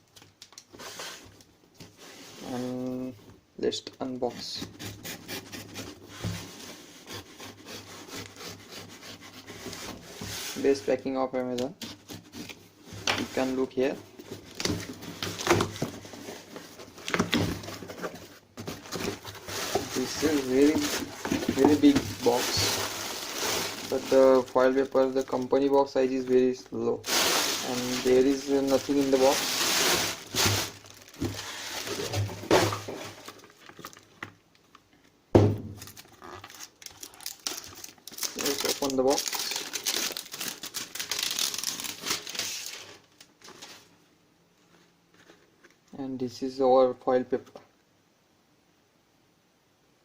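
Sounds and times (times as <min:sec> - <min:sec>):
cardboard box rustling and scraping: 0:11.8 - 0:24.5, 0:27.1 - 0:33.5
cardboard box knocks and scrapes: 0:32.0 - 0:33.2.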